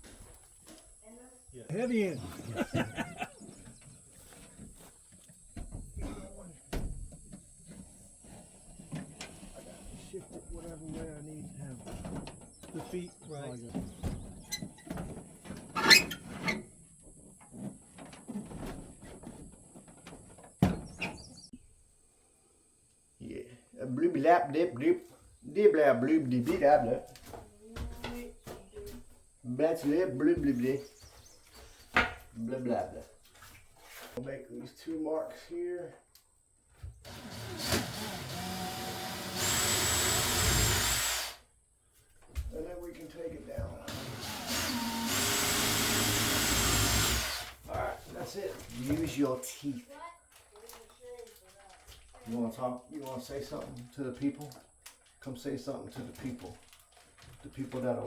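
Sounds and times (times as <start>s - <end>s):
knocks and scrapes of handling: 3.4s - 21.5s, 29.9s - 34.2s
power drill whining: 37.1s - 41.4s, 43.9s - 47.6s.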